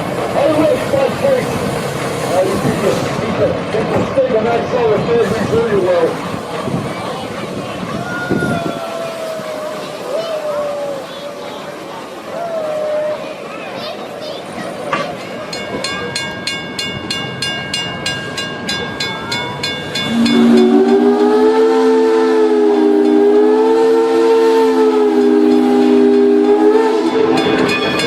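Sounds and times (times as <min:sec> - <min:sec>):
steam locomotive bell ringing: 0:15.0 - 0:28.0
steam whistle blast: 0:20.0 - 0:27.7.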